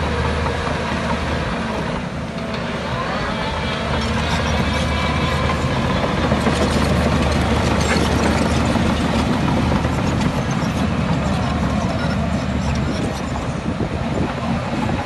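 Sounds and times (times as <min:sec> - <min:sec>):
heavy diesel engine running: 0:00.0 - 0:15.0.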